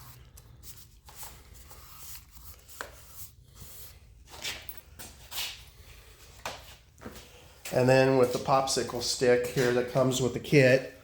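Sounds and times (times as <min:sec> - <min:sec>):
tape scraping and rustling: 0:00.0 - 0:05.6.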